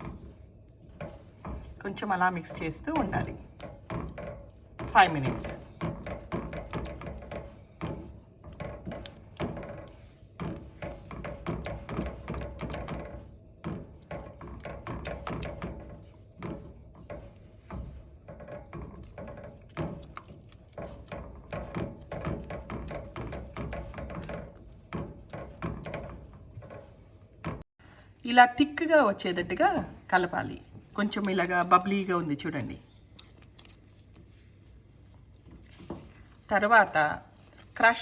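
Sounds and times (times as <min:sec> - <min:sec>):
utensil knocking and scraping pan: 0:00.0 - 0:27.7.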